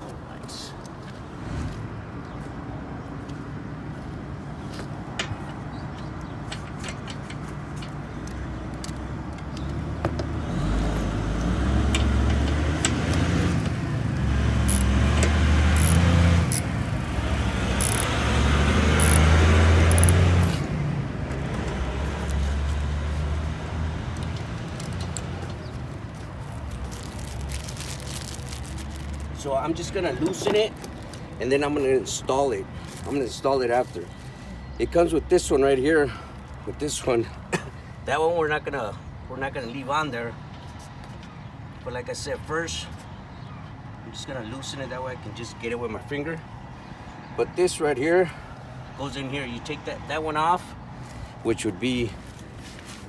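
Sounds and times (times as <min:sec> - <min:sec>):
vehicle engine rumbling: 0:00.5 - 0:37.4
small clicks: 0:19.0 - 0:20.6.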